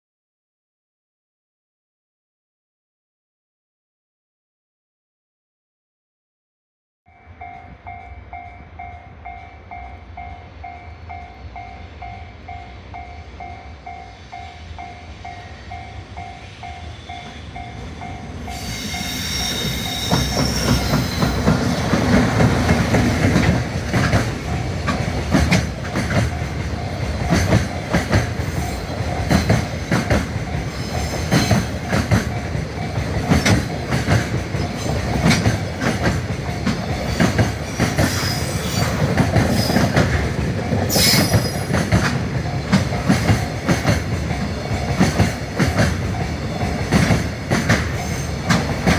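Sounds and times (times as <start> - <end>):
train wheels clattering over rail joints: 20.1 - 48.9.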